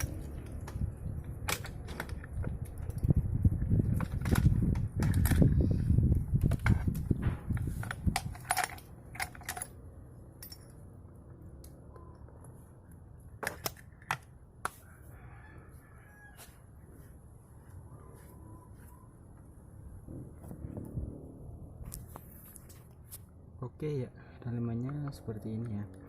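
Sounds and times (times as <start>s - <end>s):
hand tools clinking on metal: 7.8s - 9.8s, 10.4s - 10.8s
distant rooster crowing: 14.7s - 17.1s.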